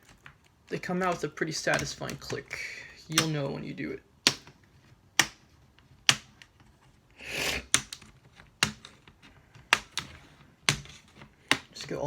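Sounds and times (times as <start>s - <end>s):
plastic clips snapping loose: 1.1s - 3.4s, 4.2s - 4.6s, 5.2s - 6.6s.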